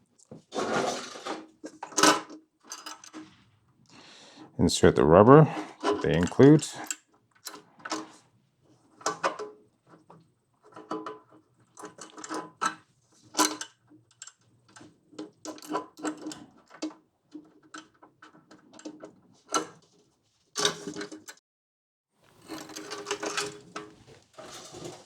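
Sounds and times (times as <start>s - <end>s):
metal parts clinking and knocking: 22.4s - 23.9s.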